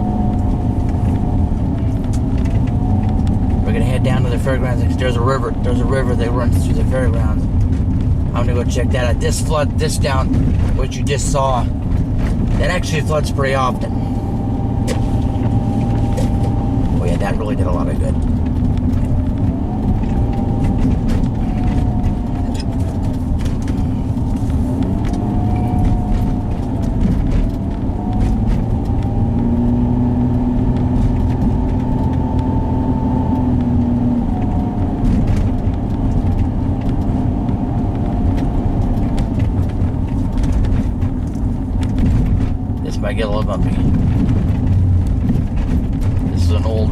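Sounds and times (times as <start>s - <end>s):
engine and tyre rumble: 0.0s - 46.9s
faint wavering whine: 19.2s - 30.0s.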